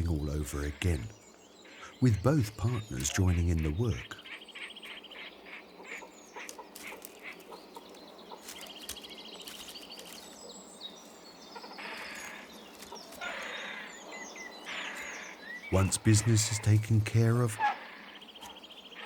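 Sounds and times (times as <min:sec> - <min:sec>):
heron rattling trill: 0:05.8 - 0:10.5
harsh rough heron call: 0:14.7 - 0:19.0.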